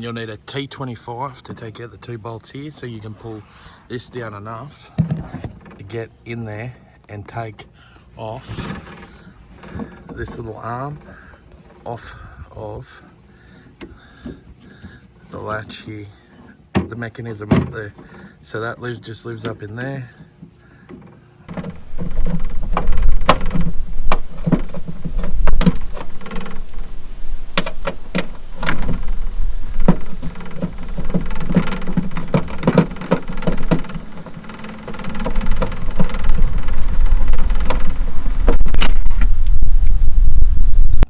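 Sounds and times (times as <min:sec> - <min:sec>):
clicks and knocks of latch and trim: 0:16.7 - 0:17.9, 0:20.9 - 0:40.0
steady low rumble: 0:21.5 - 0:41.0.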